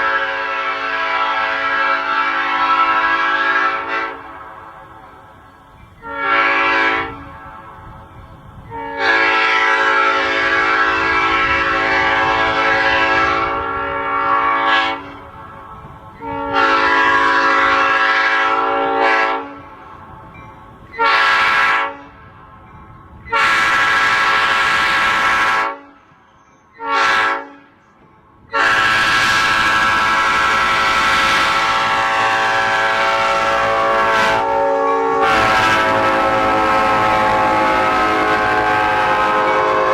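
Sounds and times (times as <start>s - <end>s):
train air horn blasts: 0.0s - 5.4s, 6.0s - 20.1s, 20.9s - 22.5s, 23.2s - 27.9s, 28.5s - 39.9s.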